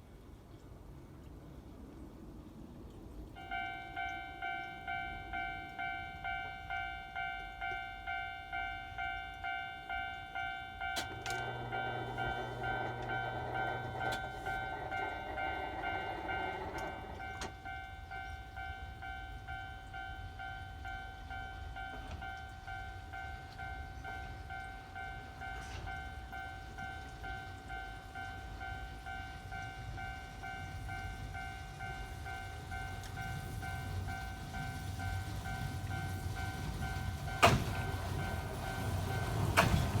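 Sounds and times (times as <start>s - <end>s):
cable car rumbling on rails: 0.6s - 40.0s
level crossing warning bell: 3.3s - 40.0s
low hum: 10.9s - 18.4s.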